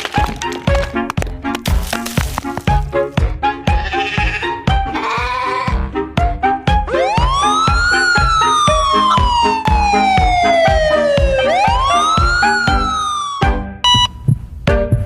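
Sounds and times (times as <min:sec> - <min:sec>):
siren-like wail: 0:06.9 - 0:13.6.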